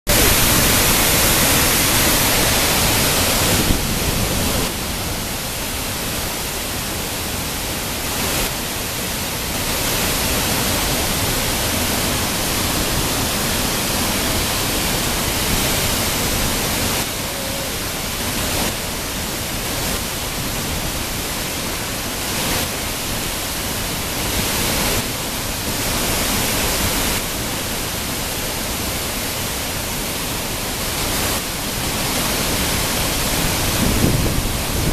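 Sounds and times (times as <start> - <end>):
waterfall rushing: 0.1 - 34.9.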